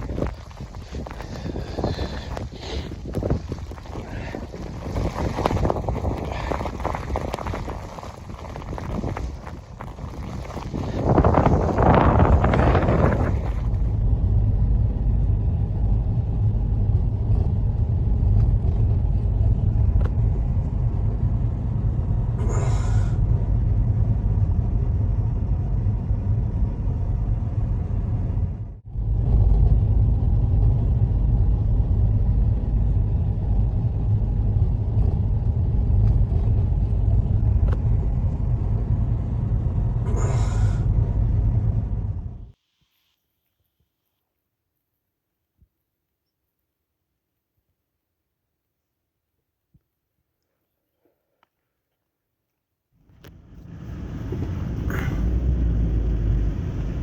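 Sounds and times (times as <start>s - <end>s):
hissing wind gusts: 0.0s - 27.7s, 53.2s - 57.0s
blizzard wind rumbling: 0.0s - 42.6s, 53.0s - 57.0s.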